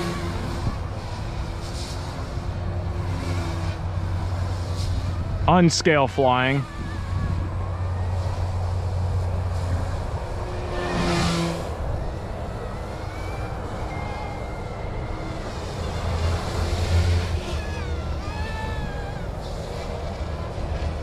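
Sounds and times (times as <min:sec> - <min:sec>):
motor whine: 0:00.0 - 0:21.0
rc helicopter rotor hum: 0:00.0 - 0:21.0.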